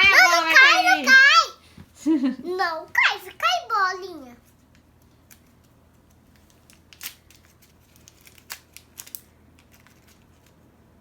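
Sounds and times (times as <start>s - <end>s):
plastic wrapping crinkling and tearing: 6.4s - 10.6s.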